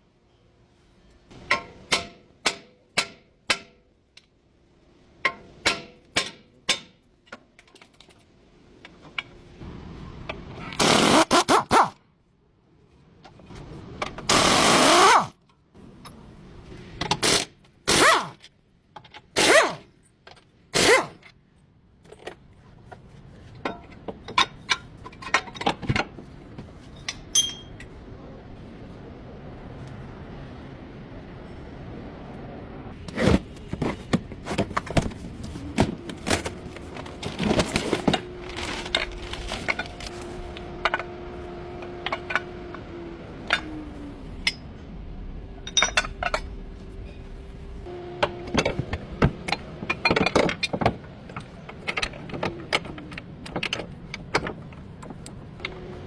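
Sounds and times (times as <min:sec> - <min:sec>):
power tool bursts: 0:14.3 - 0:15.3.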